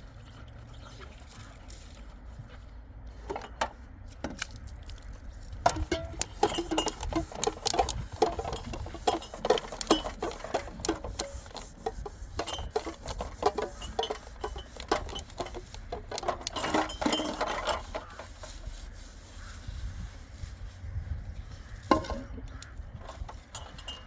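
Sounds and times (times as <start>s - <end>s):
hard objects clicking and knocking: 3.2s - 18.8s, 21.8s - 24.0s.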